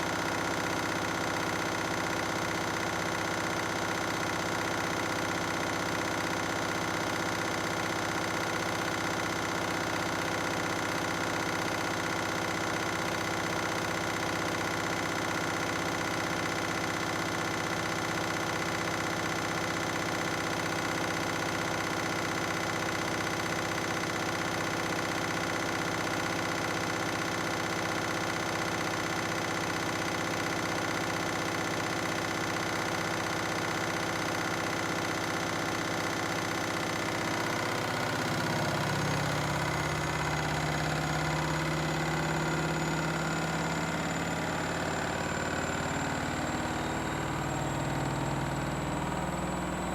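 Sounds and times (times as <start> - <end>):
washing machine spinning: 0.1 - 49.9.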